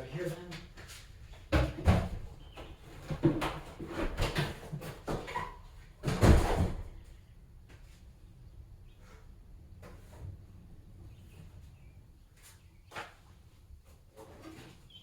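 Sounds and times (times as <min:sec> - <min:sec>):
boxes knocking and scraping: 0:01.4 - 0:07.0.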